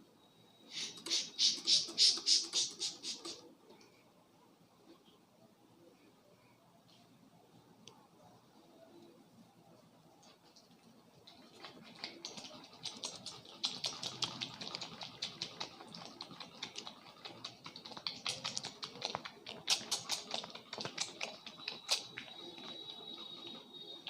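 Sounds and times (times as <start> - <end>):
thin steady high tone: 21.5 - 24.0.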